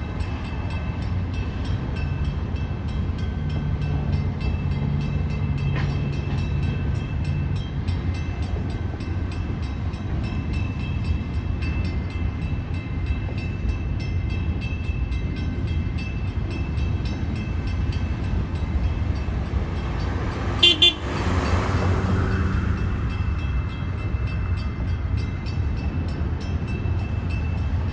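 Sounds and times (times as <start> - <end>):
train rumbling past: 0.0 - 27.9
train horn toot: 20.6 - 21.3.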